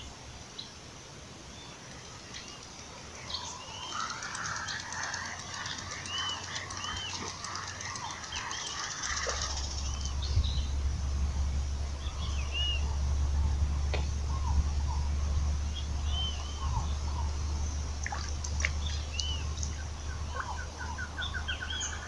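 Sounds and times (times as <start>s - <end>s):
birds chirping: 1.5s - 22.0s
rapid ticking bird chatter: 1.9s - 22.0s
low rumble: 5.4s - 22.0s.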